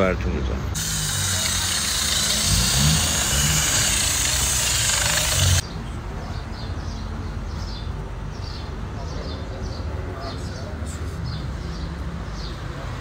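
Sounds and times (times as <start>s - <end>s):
loud steady hiss: 0.8s - 5.6s
birds chirping: 1.2s - 13.0s.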